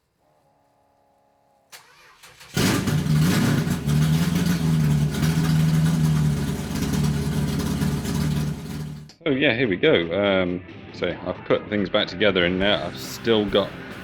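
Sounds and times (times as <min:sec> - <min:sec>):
engine cranking and idling: 0:01.8 - 0:09.1.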